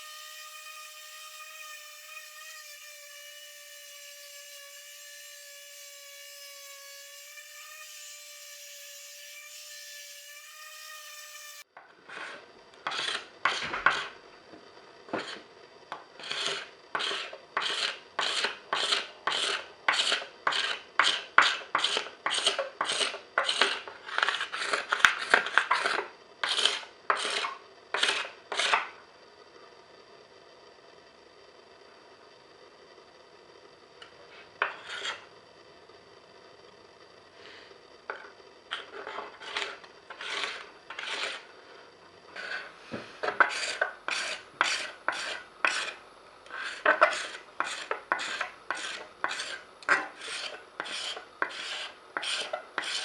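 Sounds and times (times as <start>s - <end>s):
motor whine: 0.0s - 11.7s
sandpaper rubbing on wood: 39.0s - 41.5s, 43.4s - 53.0s.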